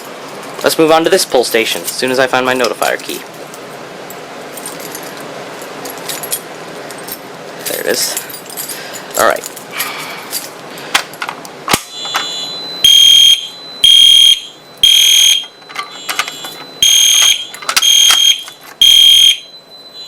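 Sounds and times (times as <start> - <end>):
fire alarm horn blasts: 11.9 - 20.0.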